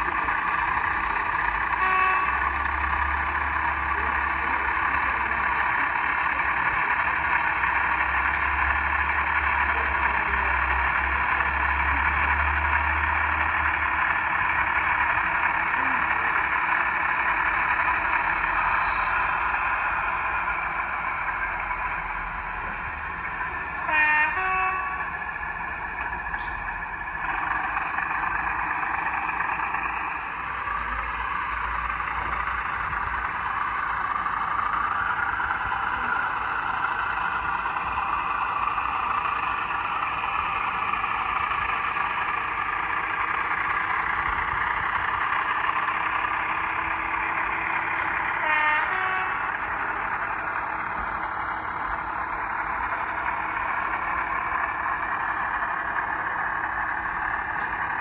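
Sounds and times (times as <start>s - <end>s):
model diesel engine sound: 0.0s - 58.0s
short horn blast: 1.8s - 2.5s, 23.8s - 25.0s, 48.3s - 49.6s.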